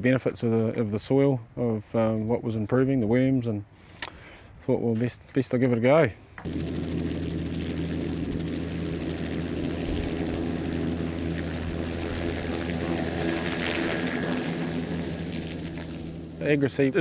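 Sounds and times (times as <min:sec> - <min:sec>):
helicopter engine and rotor hum: 0:06.4 - 0:17.0.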